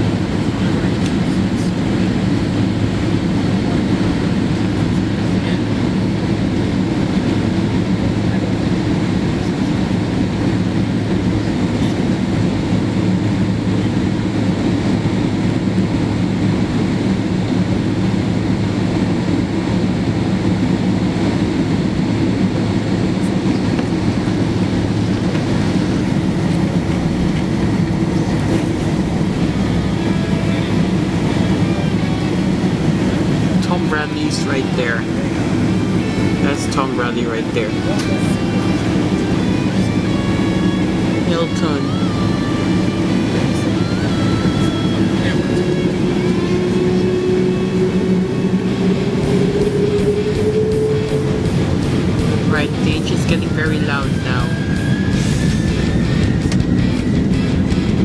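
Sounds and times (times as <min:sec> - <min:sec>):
jet engines humming: 0:00.0 - 0:58.0
wheels rumbling on taxiway: 0:00.0 - 0:58.0.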